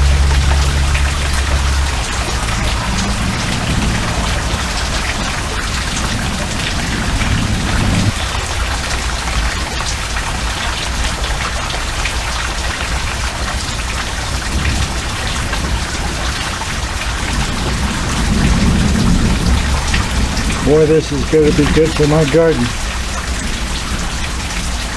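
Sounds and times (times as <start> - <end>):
low rumble: 0.0 - 8.2, 17.1 - 21.7
heavy rain pattering: 0.0 - 24.9.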